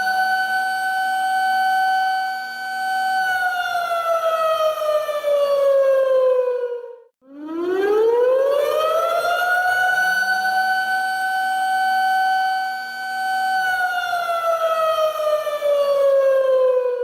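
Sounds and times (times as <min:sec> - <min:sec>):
warning siren wailing: 0:00.0 - 0:17.0.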